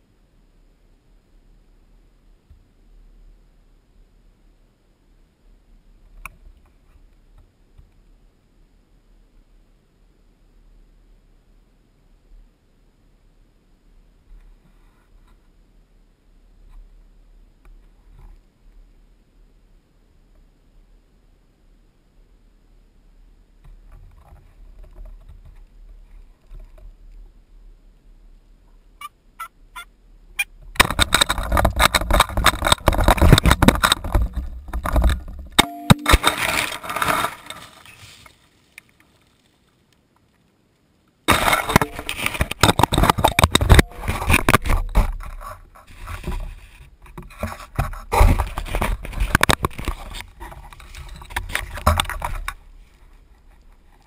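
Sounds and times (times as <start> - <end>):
rustling and clattering: 23.6 - 27.0, 30.6 - 39.5, 41.3 - 54.0.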